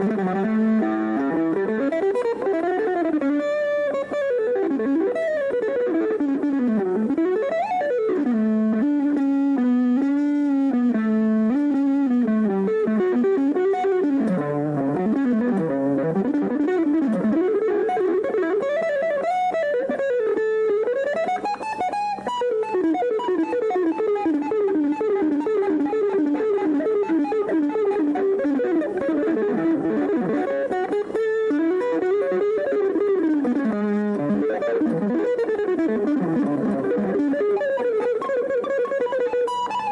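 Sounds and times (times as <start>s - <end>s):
electric guitar melody: 0.0s - 39.9s.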